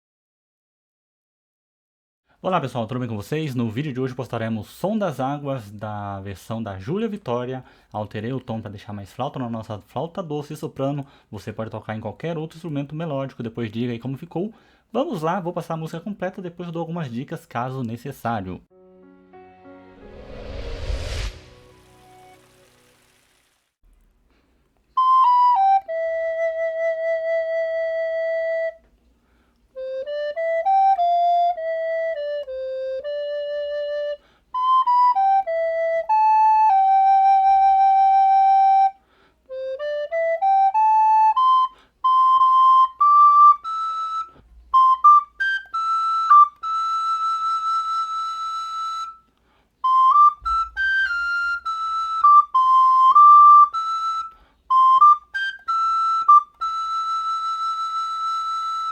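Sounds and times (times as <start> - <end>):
soprano recorder melody: 24.9 - 29.0, 29.6 - 58.9.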